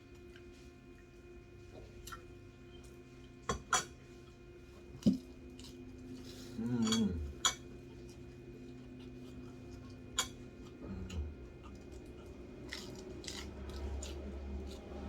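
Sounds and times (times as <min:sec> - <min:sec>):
person chewing: 0:05.1 - 0:15.0
cutlery clinking against a dish: 0:06.8 - 0:07.7.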